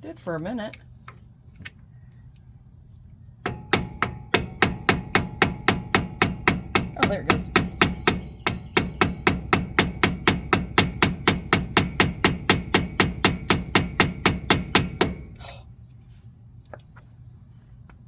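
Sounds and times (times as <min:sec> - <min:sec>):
rapid hammer blows on metal: 0:03.4 - 0:15.6.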